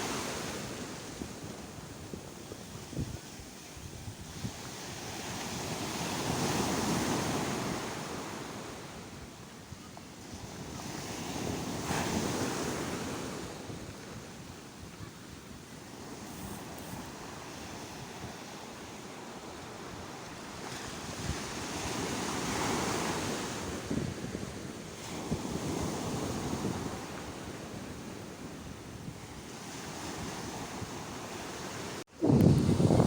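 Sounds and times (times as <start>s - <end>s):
surf washing ashore: 0.0s - 33.0s
wind buffeting microphone: 19.5s - 33.0s.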